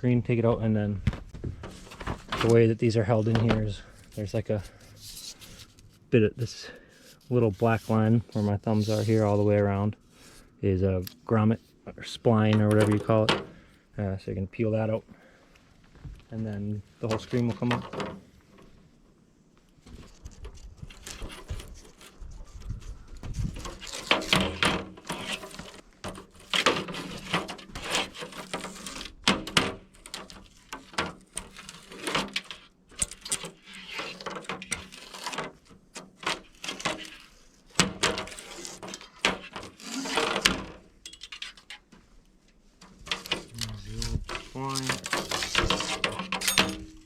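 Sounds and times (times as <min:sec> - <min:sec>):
rubber spline peeled from frame: 0:07.0 - 0:09.4, 0:19.8 - 0:29.5, 0:30.1 - 0:40.8
screen mesh rustling: 0:19.8 - 0:47.0.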